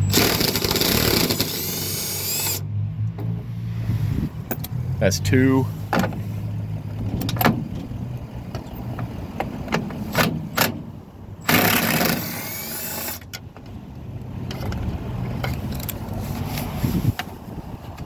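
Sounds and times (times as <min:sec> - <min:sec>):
power tool whine: 0:00.1 - 0:02.6.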